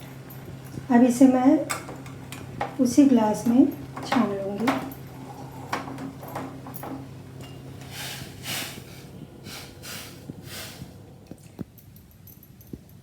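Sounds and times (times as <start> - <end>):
low hum: 5.0 - 11.6.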